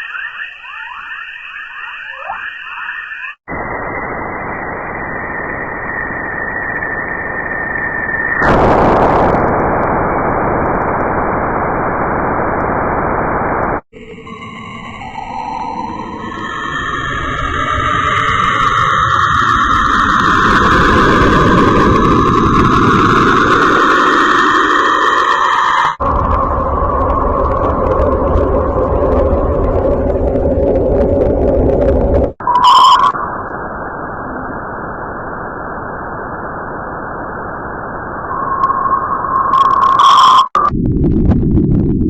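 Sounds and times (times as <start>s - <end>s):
eerie drone of hiss and rumble: 3.5s - 11.4s, 13.9s - 42.0s
bright tone: 32.4s - 33.3s.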